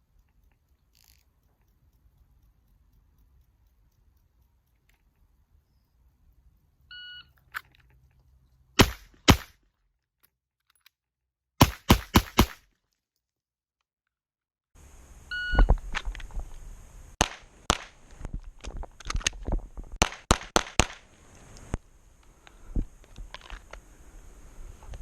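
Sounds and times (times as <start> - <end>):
pistol shots: 8.8 - 9.6, 11.6 - 12.6, 17.2 - 18.0, 20.0 - 21.0
shot timer beep: 15.3 - 15.7.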